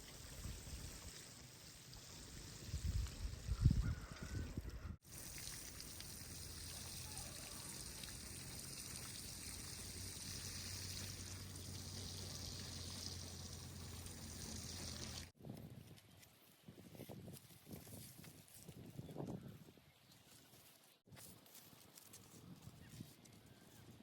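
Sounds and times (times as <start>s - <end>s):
running water rushing: 5.0s - 15.3s.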